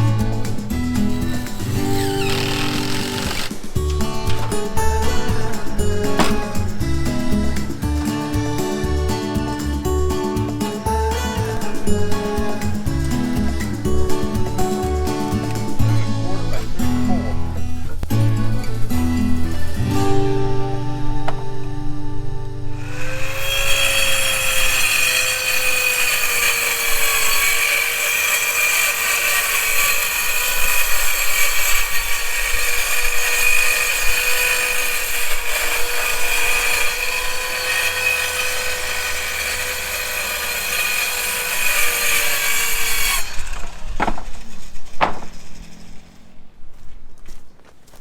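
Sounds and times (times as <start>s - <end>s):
power saw cutting wood: 0.0s - 18.8s, 22.8s - 46.4s
sharp knocks: 0.4s - 15.7s, 44.0s - 45.7s.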